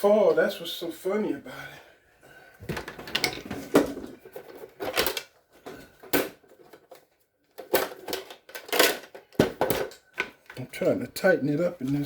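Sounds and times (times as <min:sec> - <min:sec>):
small metal parts clattering: 0:06.1 - 0:10.3.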